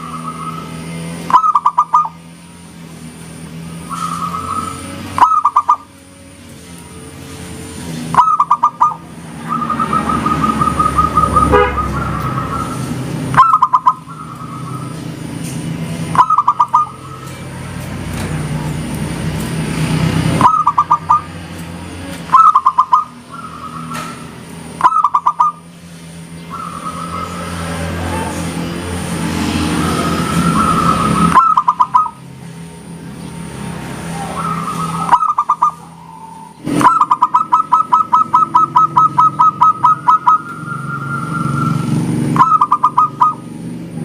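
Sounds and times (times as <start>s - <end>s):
dove cooing: 0.0s - 2.2s, 3.8s - 6.1s, 8.1s - 15.1s, 16.1s - 17.4s, 20.4s - 21.4s, 22.3s - 25.7s, 34.1s - 41.4s, 42.4s - 43.5s.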